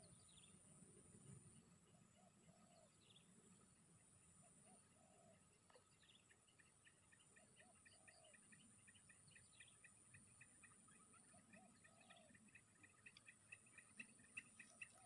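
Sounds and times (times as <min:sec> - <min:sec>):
rapid chirping: 0:06.3 - 0:15.0.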